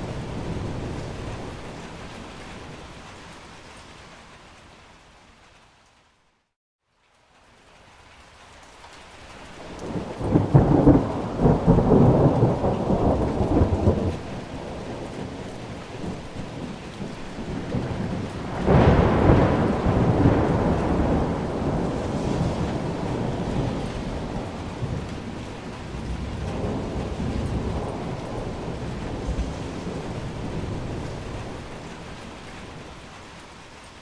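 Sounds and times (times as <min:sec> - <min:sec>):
thunder rumbling: 0:00.0 - 0:02.8, 0:09.6 - 0:33.2
rain: 0:00.0 - 0:34.0.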